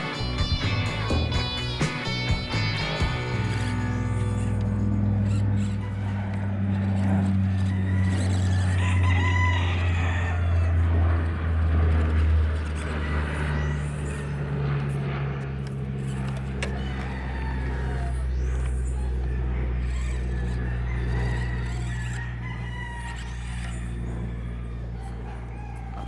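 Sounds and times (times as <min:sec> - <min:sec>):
steady low hum: 0:00.0 - 0:26.0
rooster crowing: 0:04.3 - 0:11.2, 0:12.8 - 0:14.6, 0:16.5 - 0:26.0.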